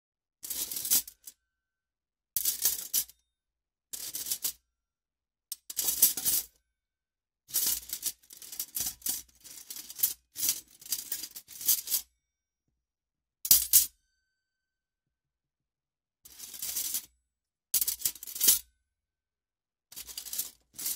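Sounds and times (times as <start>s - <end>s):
cutlery rattling in a case: 20.0s - 20.9s.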